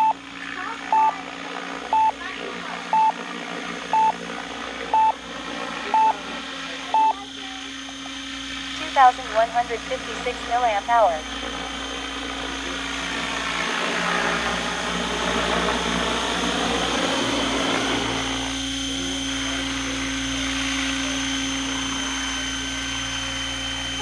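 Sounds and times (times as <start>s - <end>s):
electric motor whine: 0.0s - 24.0s
rotor blades droning: 0.0s - 24.0s.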